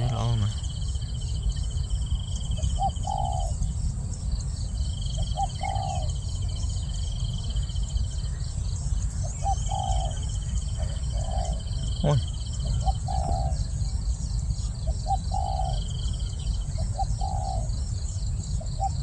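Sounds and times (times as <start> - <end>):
high insect trill: 0.0 - 19.0
dove cooing: 2.6 - 3.6, 5.2 - 6.4, 9.2 - 13.8, 14.7 - 17.8, 18.6 - 19.0.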